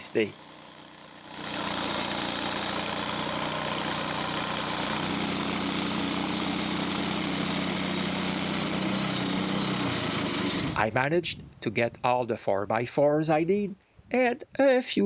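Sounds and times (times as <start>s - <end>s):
sawmill engine milling logs: 0.0s - 11.1s.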